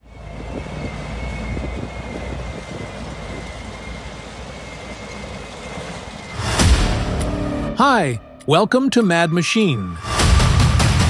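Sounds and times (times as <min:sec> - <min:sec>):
heavy machine engine rumbling: 0:00.0 - 0:08.2.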